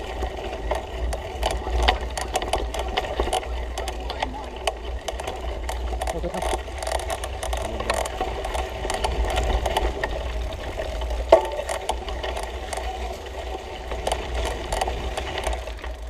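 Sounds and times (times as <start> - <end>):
tyres rumbling on dirt trail: 0.0 - 16.0
bike chain slap and frame knocks: 11.3 - 12.3.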